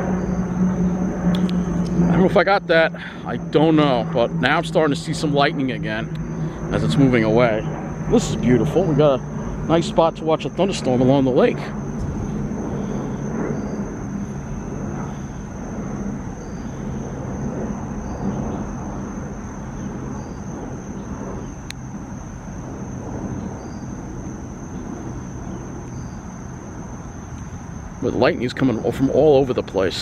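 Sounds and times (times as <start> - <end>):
distant engine drone: 0.0 - 30.0
insect trill: 0.0 - 30.0
sharp click: 1.3 - 2.0.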